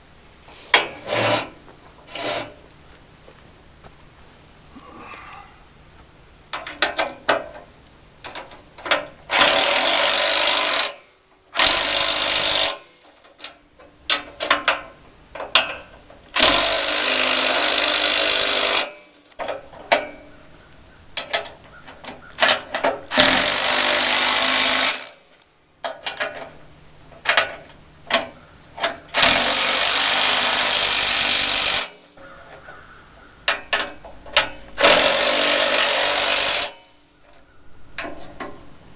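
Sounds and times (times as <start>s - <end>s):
metal clicks and knocks: 6.5s - 9.5s, 13.0s - 16.6s, 19.3s - 20.2s, 21.1s - 23.4s, 25.4s - 29.3s, 33.4s - 35.1s, 37.3s - 38.7s
impact driver driving bolts: 8.8s - 11.0s, 11.6s - 13.5s, 15.5s - 20.2s, 22.2s - 25.2s, 28.8s - 32.0s, 33.5s - 36.8s.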